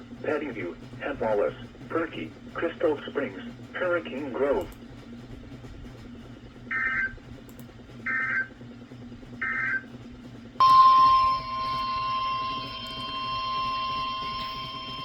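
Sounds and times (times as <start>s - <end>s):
steady warning alarm tone: 6.7s - 7.3s, 8.0s - 8.6s, 9.4s - 10.0s, 10.6s - 15.0s.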